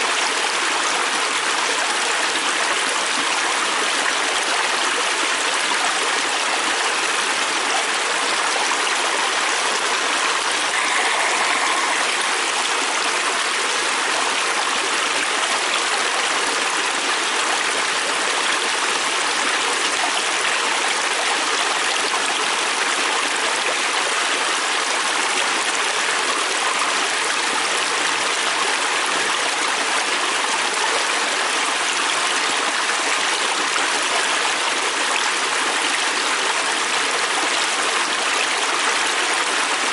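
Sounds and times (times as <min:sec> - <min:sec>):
river stream rushing and splashing: 0:00.0 - 0:39.9.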